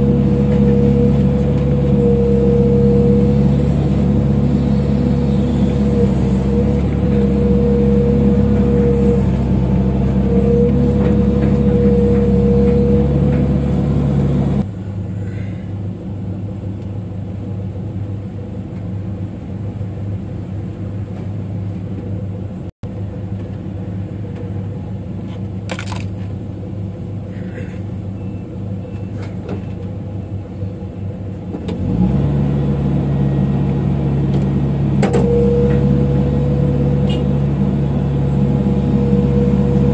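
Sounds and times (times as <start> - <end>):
steady hydraulic whine: 0.0 - 15.9
excavator engine and hydraulics: 0.0 - 39.9.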